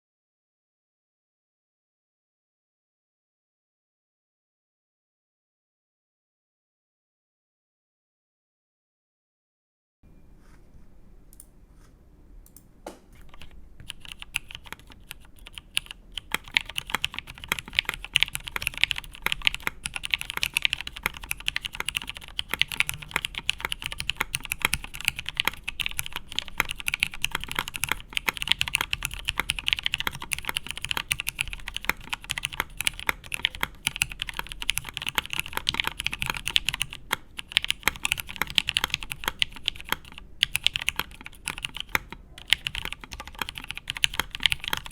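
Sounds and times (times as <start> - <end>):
mechanical keyboard typing: 13.2 - 44.9.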